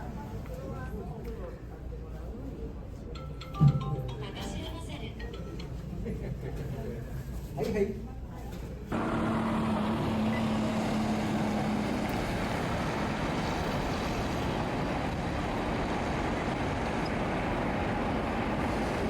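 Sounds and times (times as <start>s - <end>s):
vehicle engine noise: 8.9s - 19.0s.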